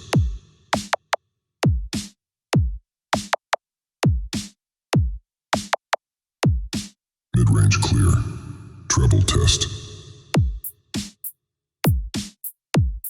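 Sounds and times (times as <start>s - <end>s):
kick drums: 0.0s - 0.9s, 1.6s - 3.4s, 4.0s - 5.7s, 6.4s - 6.9s, 10.4s - 11.1s, 11.8s - 13.0s
snare or clap hits: 0.8s - 1.0s, 3.2s - 3.4s, 11.0s - 11.2s
hi-hat ticks: 10.6s - 12.6s.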